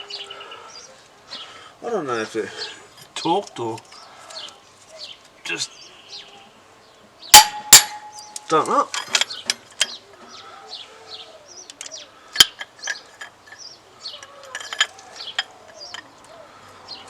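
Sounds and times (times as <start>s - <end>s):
birds chirping: 0.0s - 17.0s.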